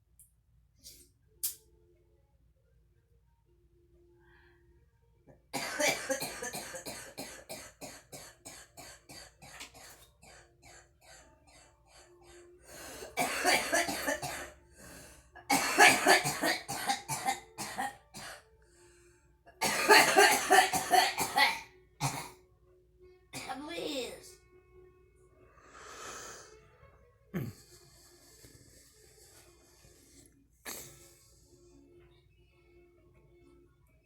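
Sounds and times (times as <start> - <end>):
girl coughing: 5.6 - 10.4, 13.0 - 14.5, 15.5 - 18.4, 19.6 - 22.4, 23.4 - 23.7.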